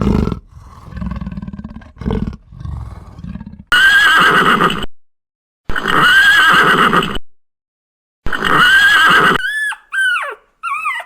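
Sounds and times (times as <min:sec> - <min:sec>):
low rumbling animal sound: 0:00.0 - 0:03.8
high wavering animal call: 0:08.6 - 0:11.0.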